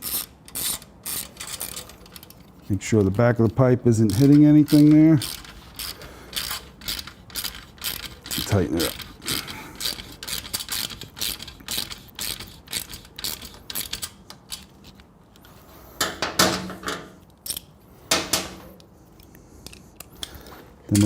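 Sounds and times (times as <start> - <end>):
ratchet wrench clicking: 0.0 - 14.7.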